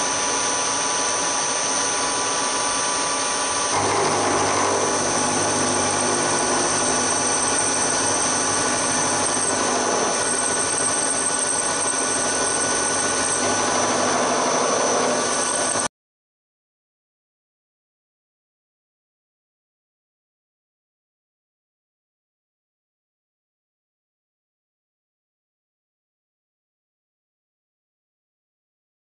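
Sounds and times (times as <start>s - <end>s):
milling machine whining: 0.0s - 15.9s
low hum: 3.7s - 15.8s.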